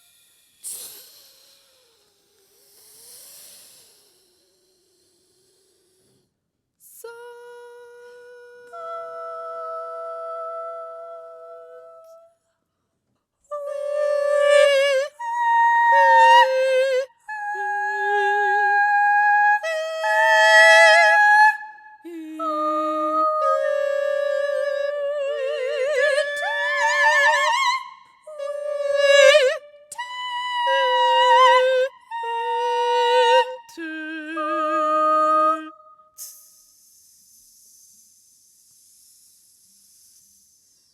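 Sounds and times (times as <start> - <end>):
singers breathing: 0.0 - 6.4
two sopranos singing a duet: 13.5 - 36.4.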